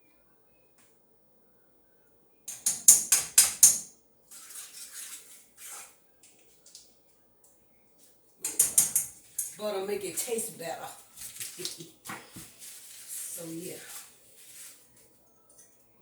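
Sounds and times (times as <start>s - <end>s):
utensils rattling knocks: 2.5s - 3.9s, 8.4s - 10.4s
soft scraping: 10.3s - 15.2s.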